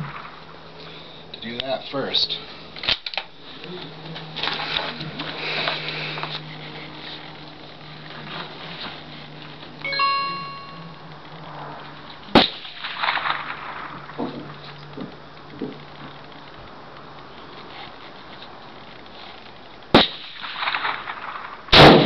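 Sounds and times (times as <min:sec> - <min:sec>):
rifle shot: 0:12.3 - 0:14.2, 0:19.9 - 0:22.0.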